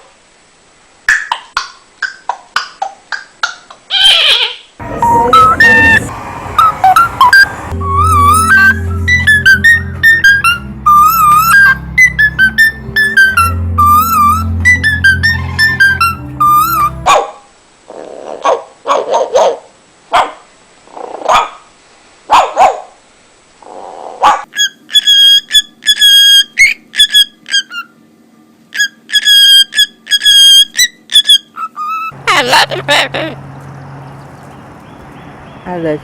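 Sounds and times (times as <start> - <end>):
parrot imitating dog barks: 3.9 - 6.1, 15.2 - 20.4, 21.1 - 21.7, 28.8 - 33.4
parrot making electronic beeps: 3.9 - 17.0, 24.5 - 27.9, 28.7 - 32.8
music with whistling: 5.0 - 17.0, 24.6 - 27.9, 28.8 - 31.4.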